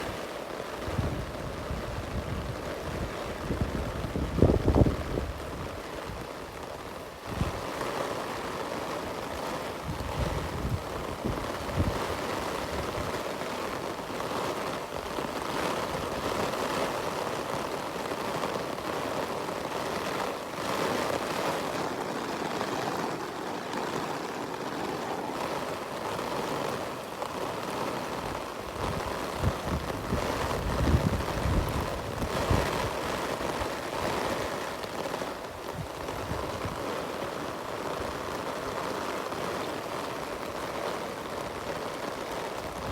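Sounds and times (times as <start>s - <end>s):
steady rain hiss: 0.0s - 42.9s
wind rumbling on microphone: 0.8s - 7.8s, 9.4s - 13.3s, 19.9s - 34.8s, 35.5s - 37.2s, 42.5s - 42.9s.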